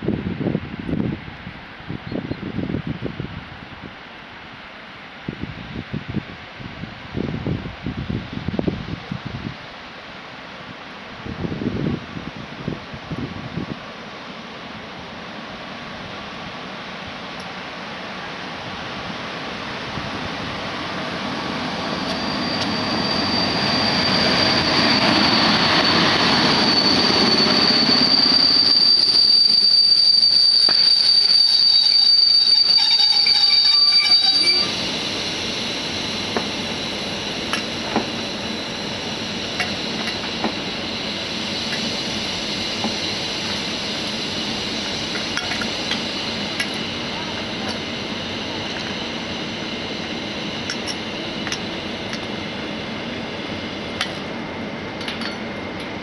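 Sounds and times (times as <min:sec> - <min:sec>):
train rumble: 0:00.0 - 0:56.0
high wheel squeal: 0:20.4 - 0:54.0.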